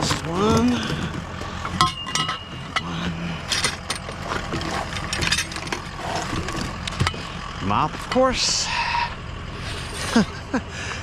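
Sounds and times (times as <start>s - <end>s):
scrap metal clinking and knocking: 0.0s - 8.5s.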